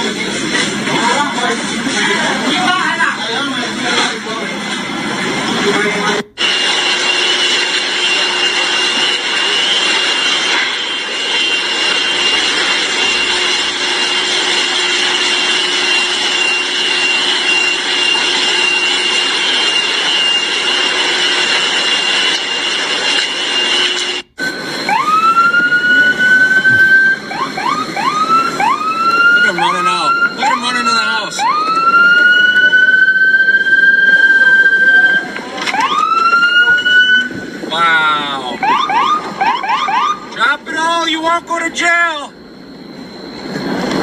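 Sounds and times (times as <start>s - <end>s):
steady high-pitched tone: 6.3s - 44.0s
emergency vehicle siren: 6.4s - 40.5s.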